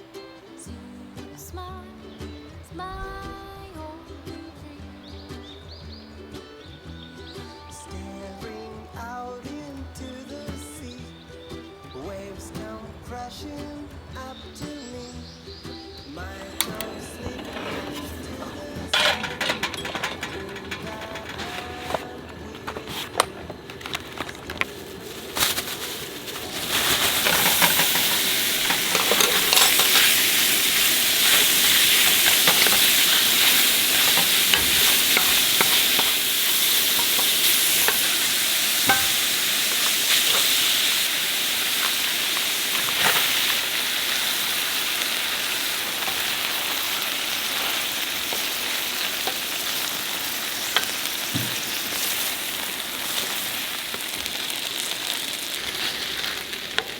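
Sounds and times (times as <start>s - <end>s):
food sizzling on a griddle: 4.3s - 56.9s
spatula clicking against griddle: 16.5s - 23.8s.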